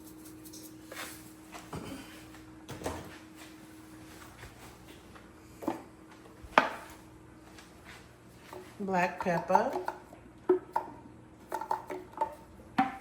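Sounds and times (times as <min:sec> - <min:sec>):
containers knocking on counter: 0:11.5 - 0:13.0.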